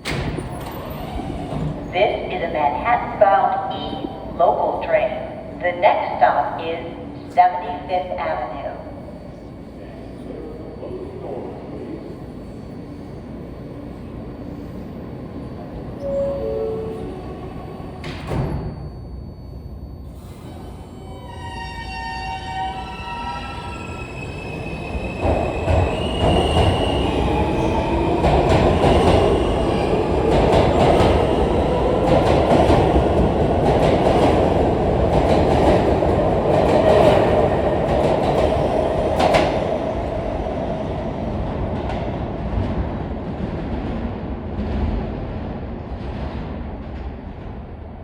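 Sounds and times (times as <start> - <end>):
train rumbling: 0.0 - 48.0.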